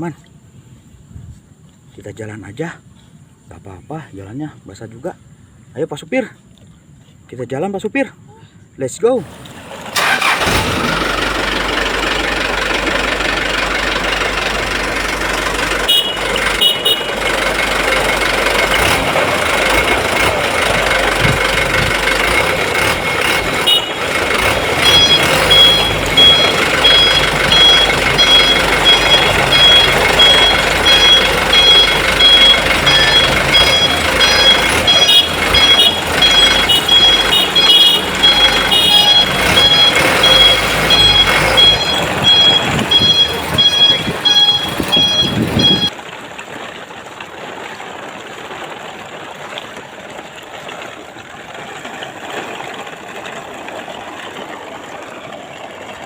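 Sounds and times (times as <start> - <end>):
toy trucks whirring: 9.2 - 45.9
high electronic beeping: 12.0 - 45.9.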